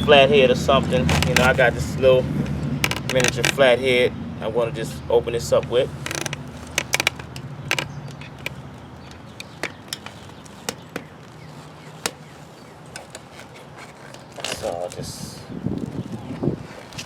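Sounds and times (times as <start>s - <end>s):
screwdriver clicking on bicycle rim: 2.8s - 3.6s, 6.0s - 11.1s, 12.0s - 14.9s.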